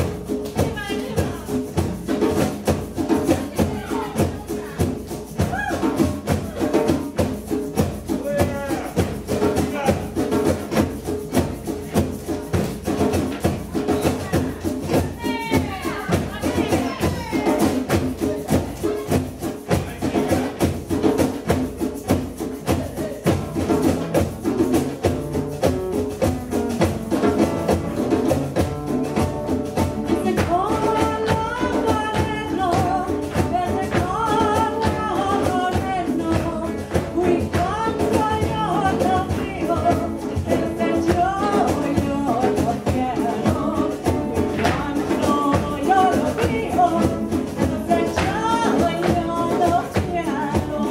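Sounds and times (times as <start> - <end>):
percussive beat: 0.0 - 50.9
person singing: 30.0 - 50.9.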